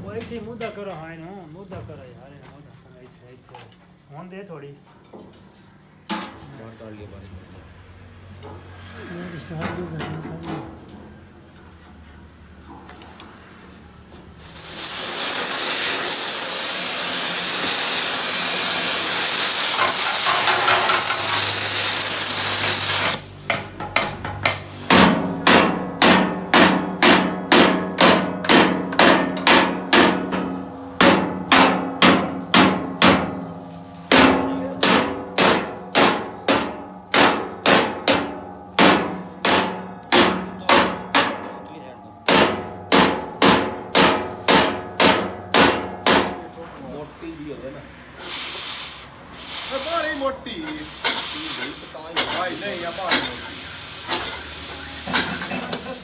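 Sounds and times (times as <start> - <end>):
loud steady hiss: 14.4 - 23.5, 47.9 - 56.0
hammer striking steel: 14.4 - 46.4, 48.2 - 56.0.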